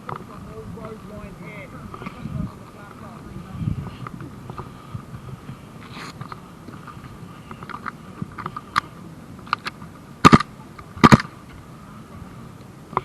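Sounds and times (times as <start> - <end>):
sharp clack: 9.5 - 11.3.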